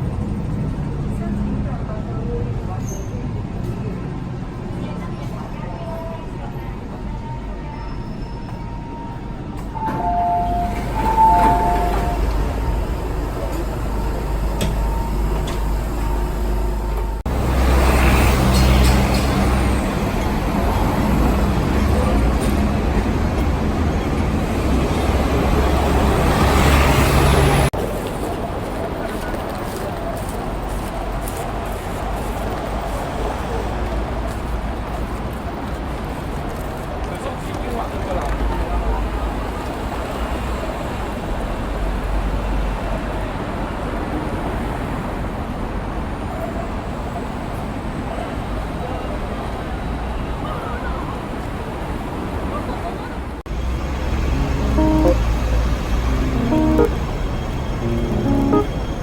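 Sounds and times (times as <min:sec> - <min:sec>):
road noise: 0:09.2 - 0:37.5, 0:53.2 - 0:59.0
vehicle engine humming: 0:53.5 - 0:59.0.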